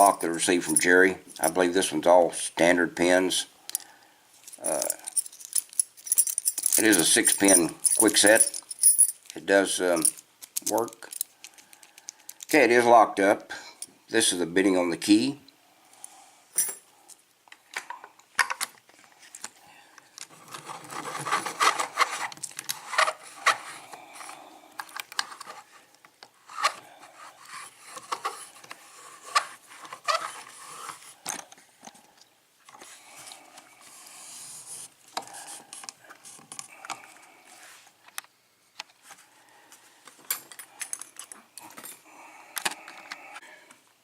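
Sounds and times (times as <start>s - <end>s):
lock and picks clicking: 4.5s - 9.4s, 10.0s - 12.6s.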